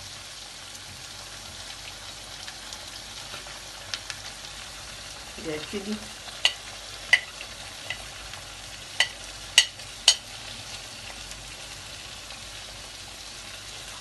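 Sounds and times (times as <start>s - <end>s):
food sizzling in a pan: 0.0s - 14.0s
spoon clinking on a pan: 6.4s - 8.1s, 9.0s - 10.2s.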